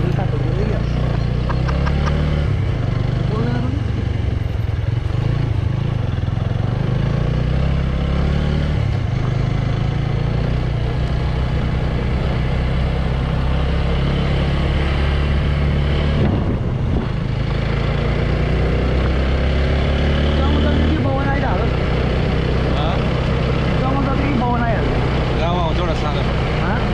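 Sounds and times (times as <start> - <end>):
motorbike engine running: 0.0 - 26.9
rushing wind noise: 14.8 - 19.8.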